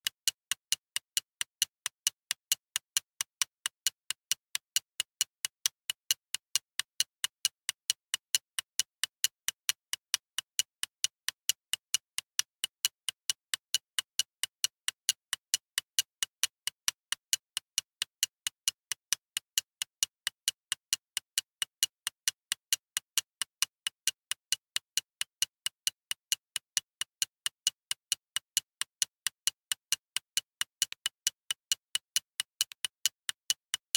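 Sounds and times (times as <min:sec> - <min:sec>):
mechanical alarm clock ticking: 0:00.0 - 0:33.9.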